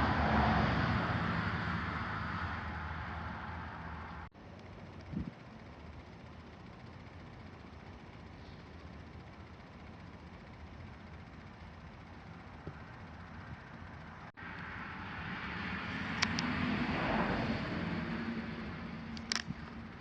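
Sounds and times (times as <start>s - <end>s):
distant engine passing by: 0.0s - 7.6s, 11.2s - 20.0s
steady low hum: 0.0s - 20.0s
sharp clicks: 4.5s - 9.0s, 16.1s - 16.6s, 19.1s - 20.0s.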